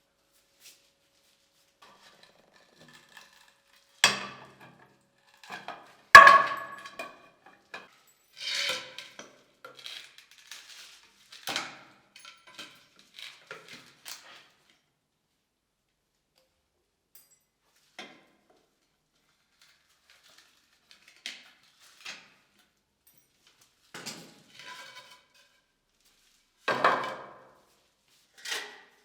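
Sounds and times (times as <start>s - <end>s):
hard objects knocking and clinking: 6.2s - 7.2s.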